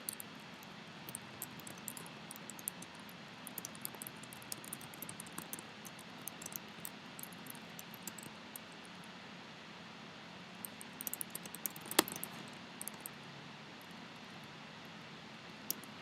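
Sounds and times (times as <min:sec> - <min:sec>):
steady hiss: 0:00.0 - 0:16.0
typing on computer keyboard: 0:01.1 - 0:08.4, 0:10.7 - 0:13.1.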